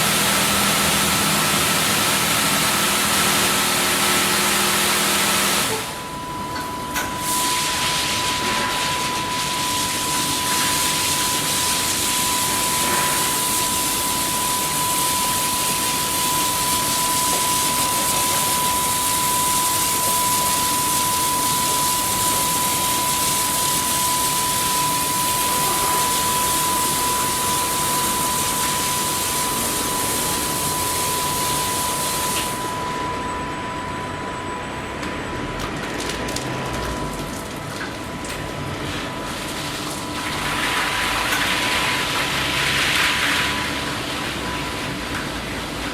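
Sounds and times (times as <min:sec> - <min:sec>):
car wash spraying water: 0:00.0 - 0:06.2, 0:07.2 - 0:32.8, 0:38.9 - 0:45.9
high whine: 0:05.7 - 0:35.7.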